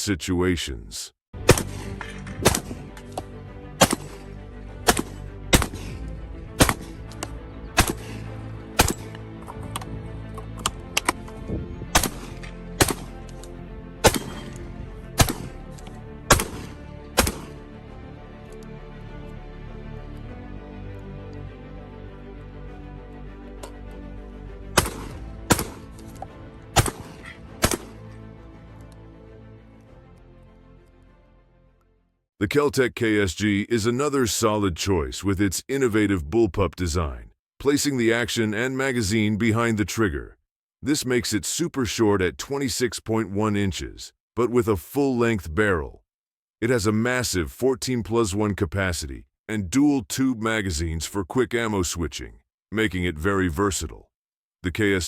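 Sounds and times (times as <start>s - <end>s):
shotgun shots: 1.4s - 3.2s, 3.8s - 6.0s, 6.6s - 7.0s, 7.7s - 9.2s, 11.9s - 13.2s, 14.0s - 15.6s, 16.3s - 17.6s, 24.8s - 26.0s, 26.8s - 28.0s
background music: 1.4s - 37.1s.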